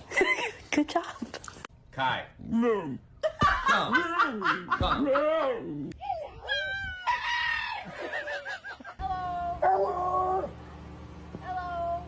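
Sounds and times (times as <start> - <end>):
dog whining and yipping: 6.0 - 7.2.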